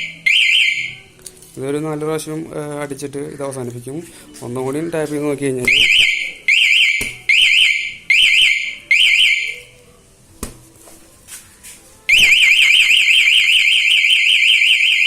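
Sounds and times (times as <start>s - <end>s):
alarm buzzer warbling siren: 0.0s - 0.9s, 5.7s - 9.5s, 12.1s - 15.0s.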